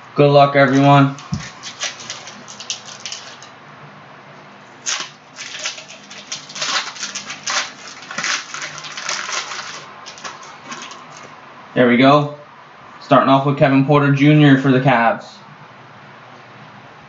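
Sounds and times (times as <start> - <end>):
plastic packaging crinkling and tearing: 0.6 - 3.5, 4.8 - 11.3.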